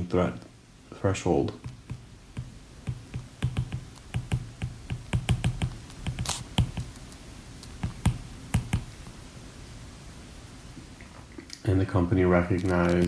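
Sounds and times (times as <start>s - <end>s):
light clicks and taps with thuds: 1.4s - 9.0s.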